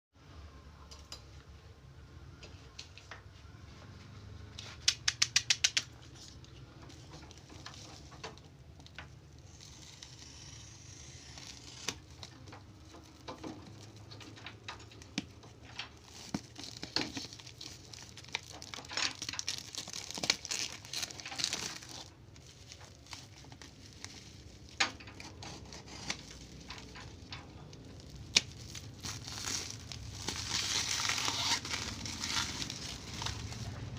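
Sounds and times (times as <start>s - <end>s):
sharp clicks: 4.8s - 6.0s
plastic packaging rustling: 5.8s - 33.9s
clicks and knocks of packaging: 11.9s - 25.4s.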